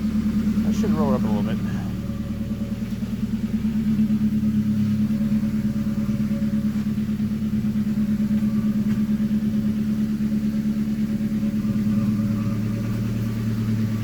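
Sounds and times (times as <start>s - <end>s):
car engine idling: 0.0s - 14.0s
low drone: 0.0s - 14.0s.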